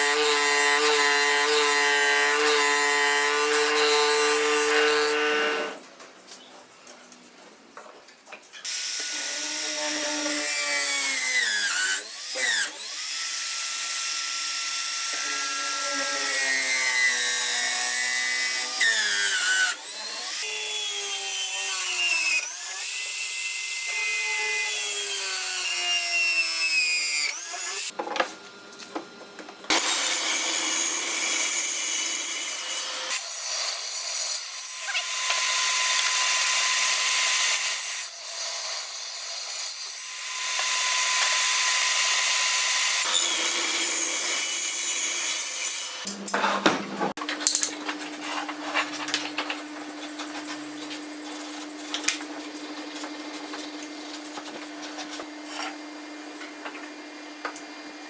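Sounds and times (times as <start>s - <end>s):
power tool cutting wood: 0.0s - 5.8s, 8.6s - 28.0s, 29.7s - 46.1s.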